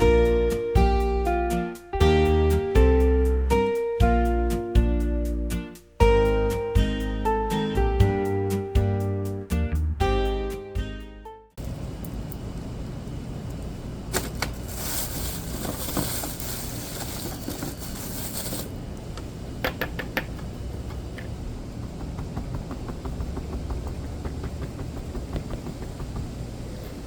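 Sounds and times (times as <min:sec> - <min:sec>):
clicks and taps of small objects: 0:19.6 - 0:20.5
steady low rumble: 0:20.4 - 0:27.0.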